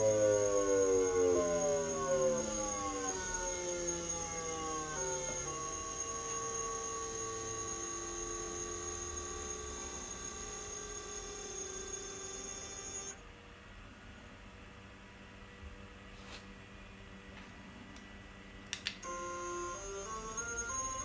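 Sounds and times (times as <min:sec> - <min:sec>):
electric motor whining: 0:00.0 - 0:13.2, 0:19.0 - 0:21.0.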